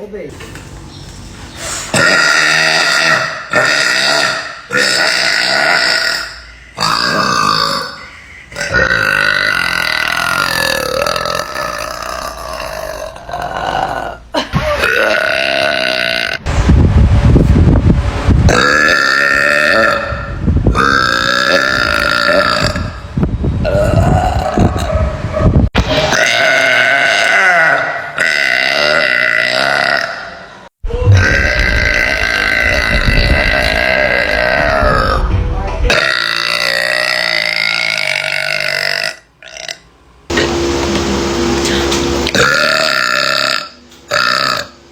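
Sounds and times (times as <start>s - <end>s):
girl belching: 2.0s - 8.0s, 8.6s - 16.5s, 18.5s - 23.0s, 23.6s - 24.9s, 26.0s - 30.4s, 31.0s - 35.3s, 35.9s - 39.8s, 42.3s - 44.8s.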